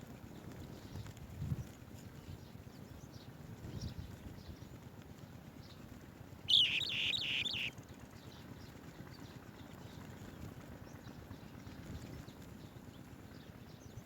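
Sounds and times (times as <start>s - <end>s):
bird chirping high: 6.5s - 7.7s.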